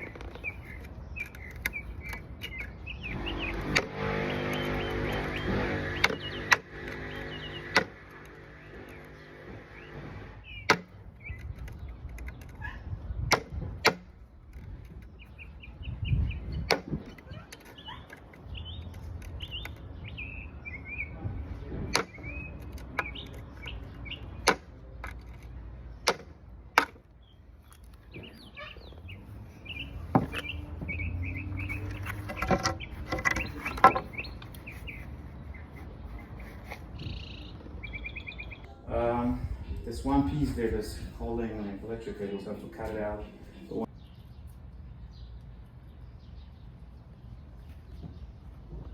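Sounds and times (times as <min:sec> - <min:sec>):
small birds chirping: 0:00.0 - 0:48.9
sharp knocks and clicks: 0:03.5 - 0:12.6, 0:13.2 - 0:15.1, 0:16.6 - 0:19.9, 0:21.9 - 0:27.1, 0:31.8 - 0:34.7.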